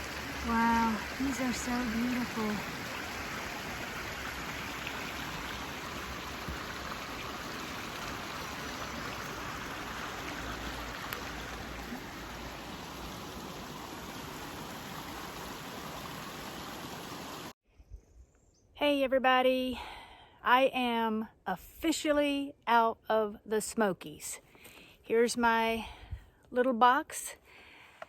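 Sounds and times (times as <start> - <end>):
rushing running water: 0.0 - 17.6.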